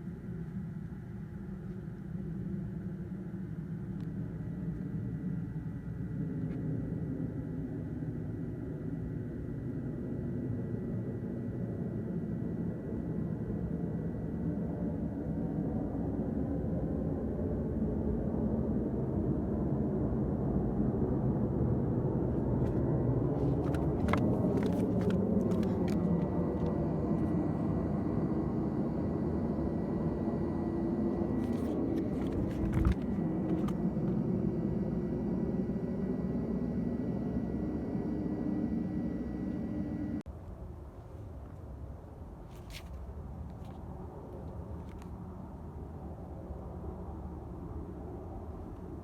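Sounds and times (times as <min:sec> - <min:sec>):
aircraft engines rumbling: 0:00.0 - 0:40.3.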